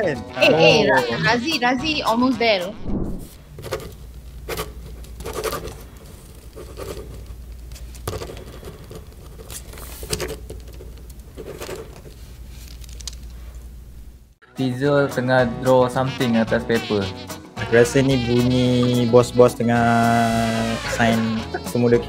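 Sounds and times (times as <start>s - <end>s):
pen writing on paper: 4.5s - 5.8s.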